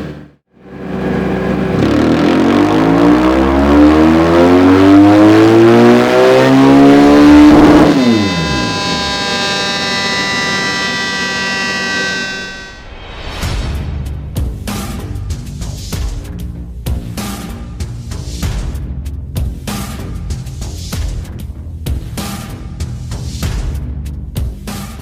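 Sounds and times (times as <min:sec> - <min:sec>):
motorcycle engine revving: 0:00.0 - 0:12.8
steady held pitches: 0:04.0 - 0:12.9.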